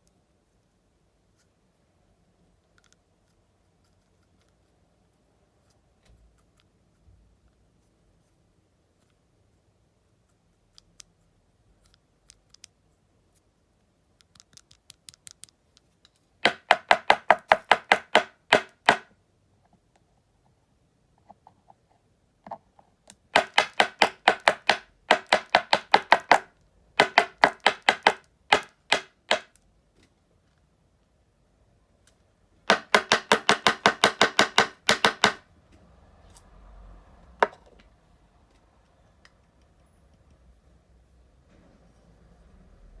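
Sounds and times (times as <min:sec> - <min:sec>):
rapid sharp tool clicks: 0:23.3 - 0:29.6, 0:32.7 - 0:35.4.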